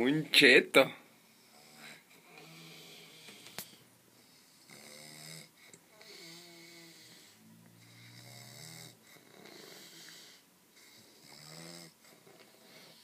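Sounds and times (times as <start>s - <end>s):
person snoring: 1.4s - 13.0s.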